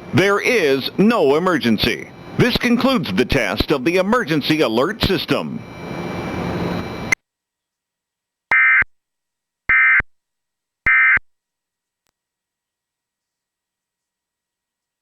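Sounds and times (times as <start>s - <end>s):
two-tone data tone bursts: 8.5s - 8.8s, 10.9s - 11.2s.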